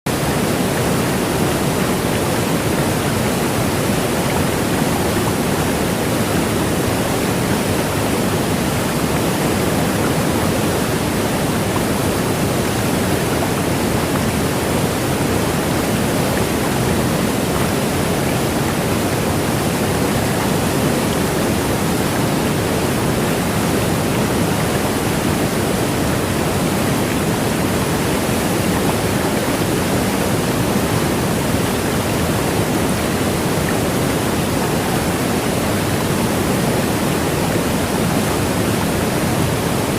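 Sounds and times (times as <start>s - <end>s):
indoor waterfall pouring: 0.1s - 39.9s.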